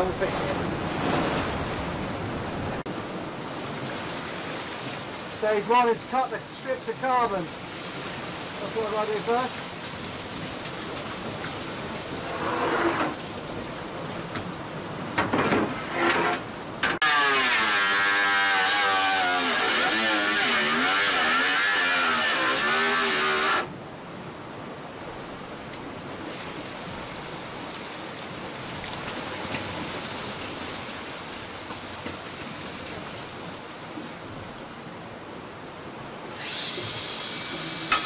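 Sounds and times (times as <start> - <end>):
power tool cutting: 17.0 - 23.7, 36.3 - 38.0
hiss of boat through water: 36.3 - 38.0.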